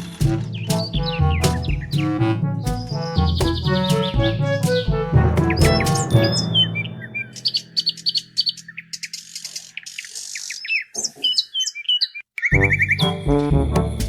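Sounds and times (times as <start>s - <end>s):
loud music: 0.0s - 7.6s
birds chirping and whistling: 0.0s - 13.3s.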